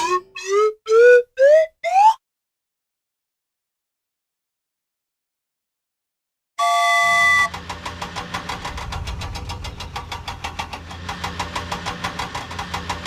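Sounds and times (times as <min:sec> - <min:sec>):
horn honk: 0:06.6 - 0:07.6
vehicle engine running: 0:07.3 - 0:13.0.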